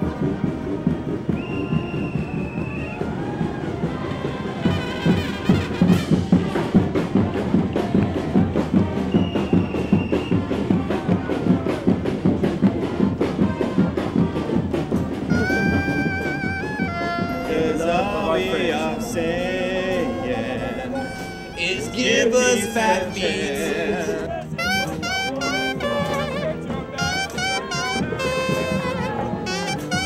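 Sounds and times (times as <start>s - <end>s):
heavy steady drumming: 0.0s - 19.1s, 24.4s - 30.0s
street brass band playing: 0.0s - 30.0s
high held brass note: 15.3s - 19.1s, 20.1s - 23.5s, 24.6s - 30.0s.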